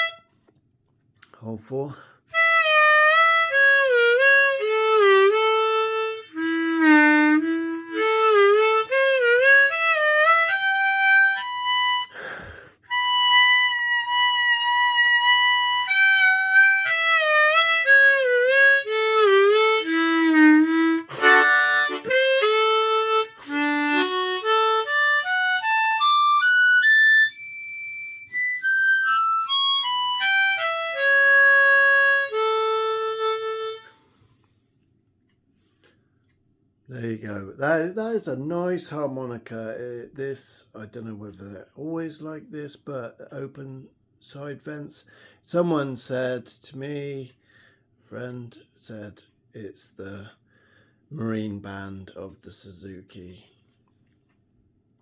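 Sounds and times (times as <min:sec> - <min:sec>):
bluesy harmonica melody: 0:00.0 - 0:00.5, 0:02.3 - 0:34.4.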